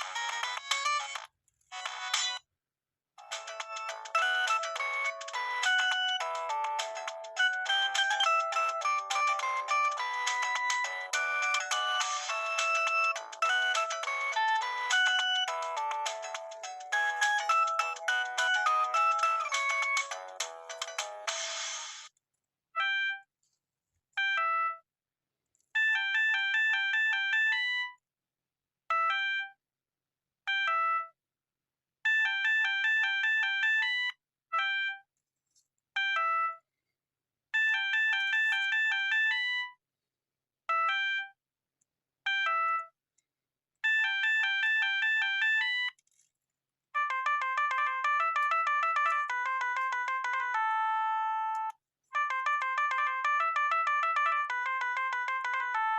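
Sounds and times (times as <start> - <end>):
mobile phone ringtone melody: 0.0 - 1.2, 3.2 - 21.9, 25.8 - 28.0, 28.9 - 29.6, 32.1 - 35.0, 36.0 - 36.6, 37.6 - 39.8, 40.7 - 41.4, 42.3 - 42.9, 43.8 - 46.0, 47.0 - 55.9.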